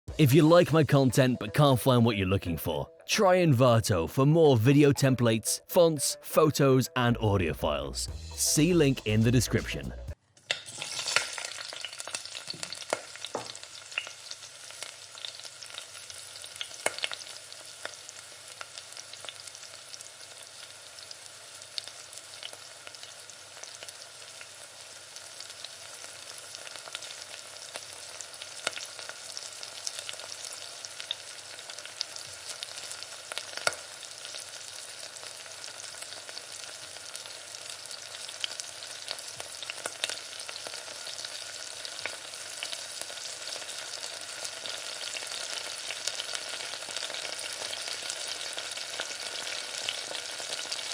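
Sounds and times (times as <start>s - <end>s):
food sizzling in frying pan: 10.5s - 50.9s.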